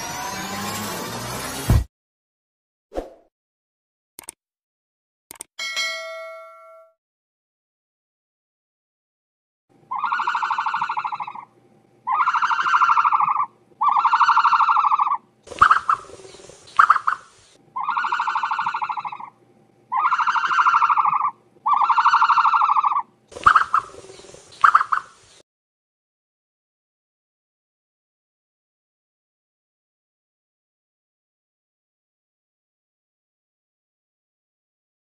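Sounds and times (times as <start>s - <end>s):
ostrich squawks: 9.9s - 11.5s, 12.1s - 16.1s, 17.8s - 19.3s, 19.9s - 23.9s
ostrich buzzy calls: 9.9s - 25.4s
ostrich hissing: 15.5s - 17.6s, 23.3s - 25.4s.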